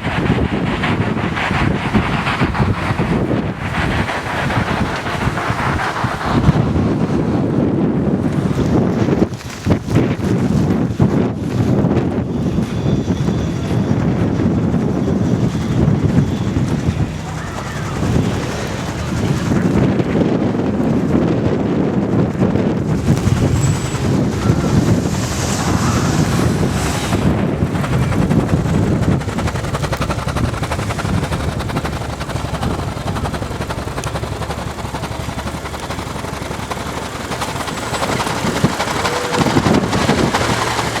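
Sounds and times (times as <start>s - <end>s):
wind buffeting microphone: 0.0s - 41.0s.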